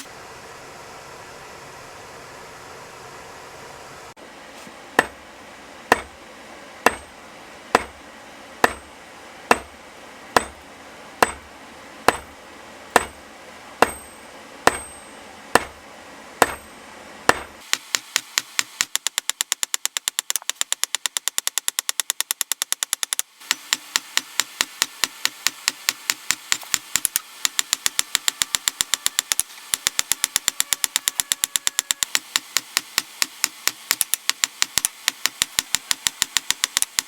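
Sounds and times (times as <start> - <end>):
hammer striking steel on anvil: 5.0 - 5.2, 5.9 - 6.2, 6.8 - 8.0, 8.6 - 10.6, 11.2 - 11.5, 12.1 - 15.8, 16.4 - 19.4
light hammer taps: 7.8 - 8.0.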